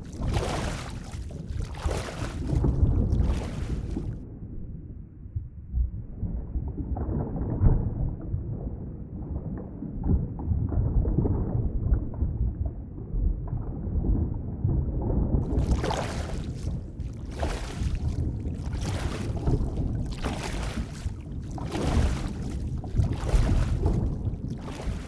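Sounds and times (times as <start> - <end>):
underwater churning rumble: 0.0 - 4.2, 15.4 - 25.0.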